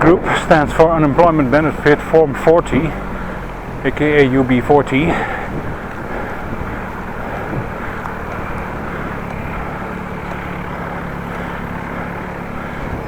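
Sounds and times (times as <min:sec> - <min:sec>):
steady low drone: 0:00.0 - 0:13.0
wind on microphone: 0:05.2 - 0:09.8.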